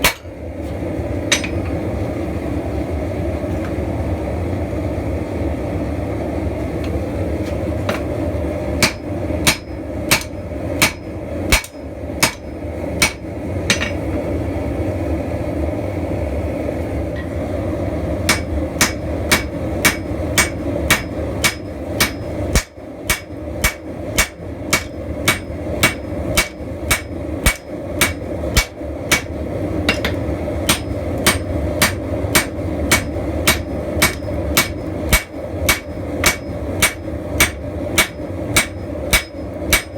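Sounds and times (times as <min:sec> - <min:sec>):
hammer striking steel on anvil: 0:00.0 - 0:00.4, 0:01.3 - 0:01.8, 0:08.8 - 0:14.1, 0:18.3 - 0:39.9.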